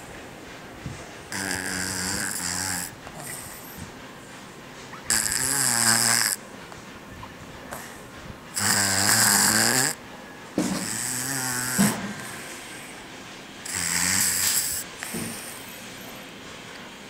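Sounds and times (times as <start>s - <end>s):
toddler snoring heavily: 1.3s - 3.8s, 5.0s - 6.4s, 7.8s - 10.0s, 10.6s - 12.5s, 13.6s - 15.7s.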